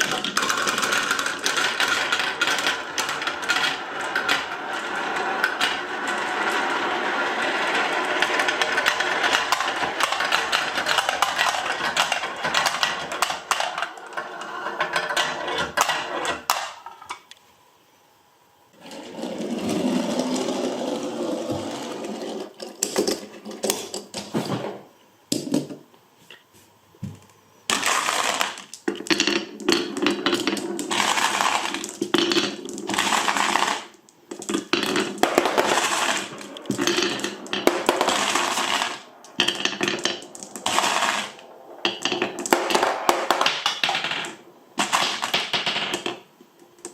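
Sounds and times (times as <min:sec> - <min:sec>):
marbles clicking on track: 0:00.0 - 0:16.7, 0:27.7 - 0:46.9
glass marbles rolling and clattering: 0:00.0 - 0:17.2, 0:27.7 - 0:46.3.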